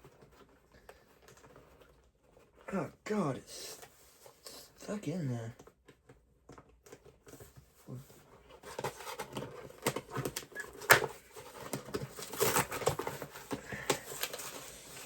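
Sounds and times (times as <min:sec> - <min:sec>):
toy packaging rustling and clicking: 0:05.5 - 0:15.0.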